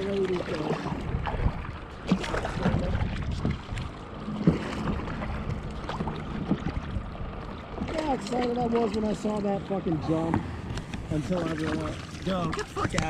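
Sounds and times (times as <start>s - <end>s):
wind rumbling on microphone: 0.0s - 8.9s
water around kayak: 0.0s - 13.0s.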